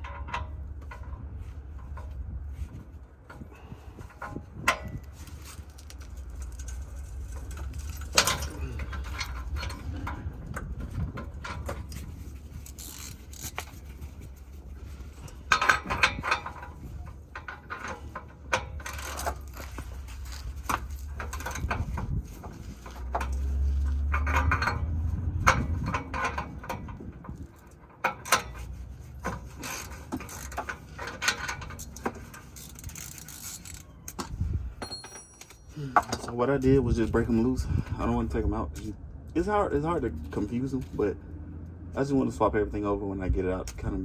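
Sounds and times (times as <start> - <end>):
metal tools clinking on metal: 3.4 - 14.0, 15.0 - 37.4.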